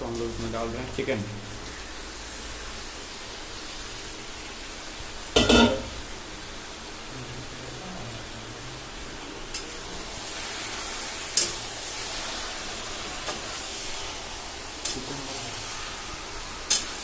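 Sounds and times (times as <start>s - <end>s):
chicken sizzling in hot oil: 0.0s - 17.0s
sharp knocks against pan: 5.4s - 6.0s.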